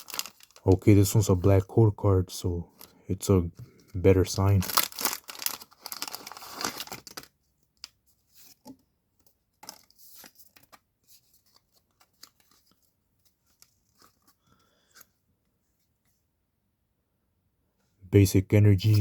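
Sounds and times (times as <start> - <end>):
foil tearing: 0.0 - 0.7, 4.4 - 7.3
foil pack rustling: 0.0 - 1.3, 4.2 - 7.3.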